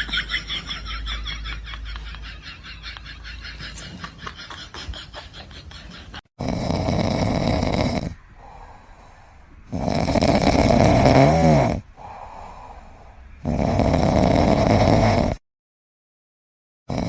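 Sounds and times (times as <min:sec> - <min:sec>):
pet snoring loudly: 0:06.4 - 0:15.4.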